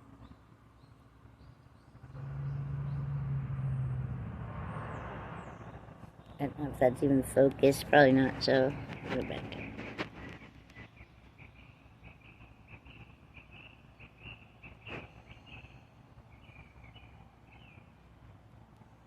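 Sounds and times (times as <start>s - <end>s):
small bird chirping: 8.4s - 17.9s.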